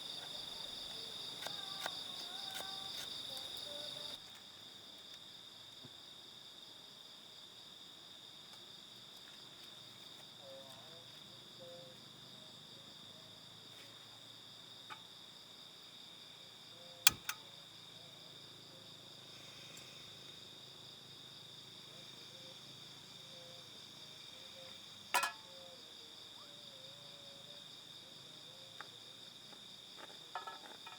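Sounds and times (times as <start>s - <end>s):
crickets and insects chirring: 0.0s - 30.9s.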